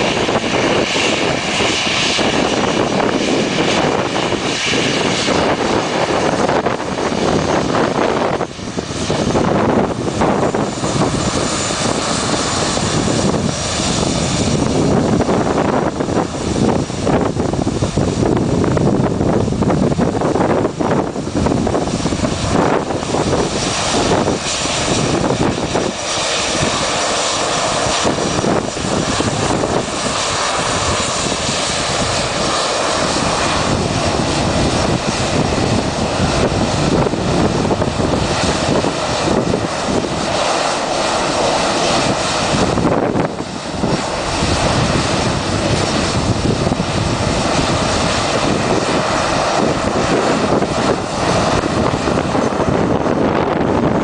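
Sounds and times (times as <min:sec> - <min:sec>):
faint jet engine whine: 0:00.0 - 0:54.0
jet airliner taking off: 0:00.0 - 0:54.0.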